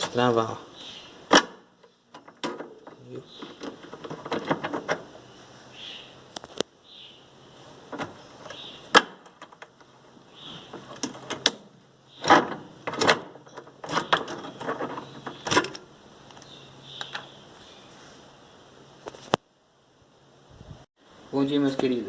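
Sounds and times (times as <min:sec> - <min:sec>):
clicks and knocks of parts and tools: 0:01.3 - 0:05.1, 0:07.9 - 0:10.0, 0:10.7 - 0:17.3.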